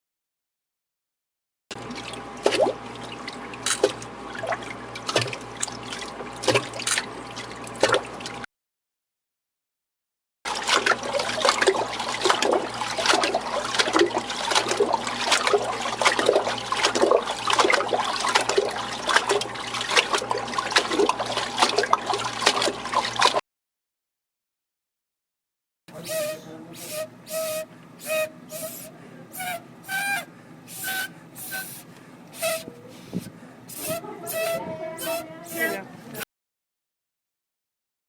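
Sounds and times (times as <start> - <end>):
steady hum: 25.9 - 36.2.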